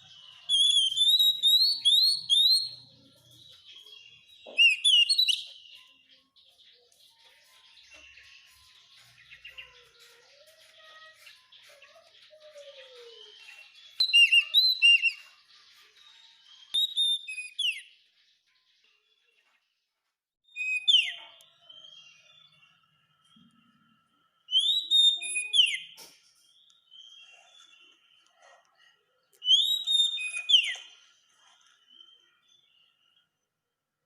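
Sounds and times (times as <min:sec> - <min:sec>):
faint bird twittering: 0:00.0 - 0:19.6, 0:20.5 - 0:33.5
bird singing whistled phrases: 0:00.1 - 0:02.9, 0:03.8 - 0:06.0, 0:11.7 - 0:15.4, 0:16.6 - 0:17.9, 0:20.5 - 0:22.6, 0:24.5 - 0:26.0, 0:29.4 - 0:31.0.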